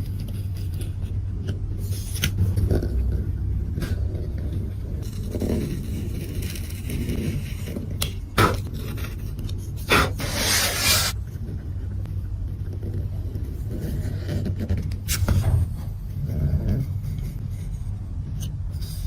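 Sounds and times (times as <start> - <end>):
steady low hum: 0.0 - 19.0
rough scrape: 5.0 - 11.2.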